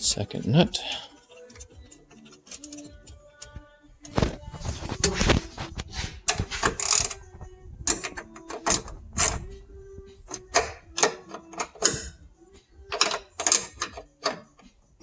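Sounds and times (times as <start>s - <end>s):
metallic clicks and knocks of hand tool: 10.3s - 12.2s, 12.9s - 14.7s.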